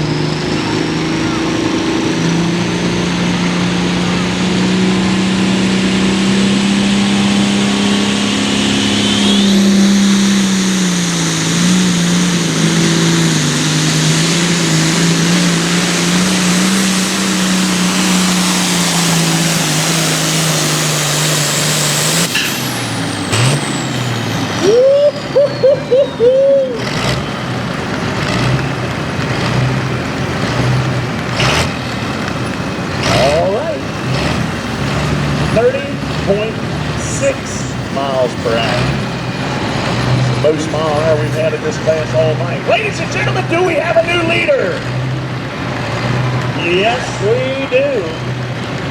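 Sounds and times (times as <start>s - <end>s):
tractor engine running hard: 0.0s - 48.9s
short rising chirps: 7.0s - 27.4s.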